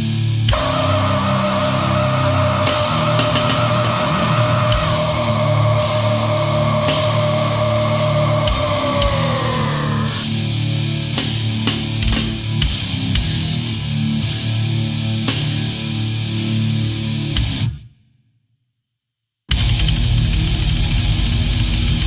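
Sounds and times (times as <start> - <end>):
drums with cymbal crashes: 0.0 - 14.7, 19.5 - 22.0
distorted guitars: 0.0 - 17.8
long high held note: 0.5 - 10.3.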